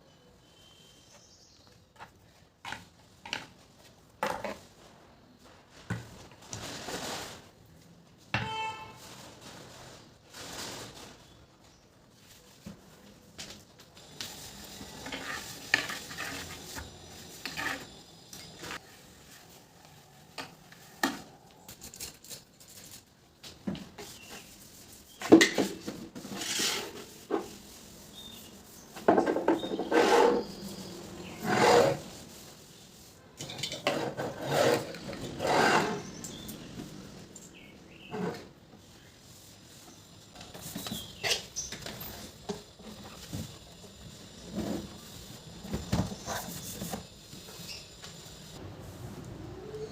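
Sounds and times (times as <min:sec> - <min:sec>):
rustling scrapes: 0:04.4 - 0:07.9, 0:08.8 - 0:13.0, 0:14.0 - 0:21.0, 0:24.0 - 0:36.5
objects clattering and knocking: 0:29.0 - 0:30.5, 0:33.4 - 0:36.9.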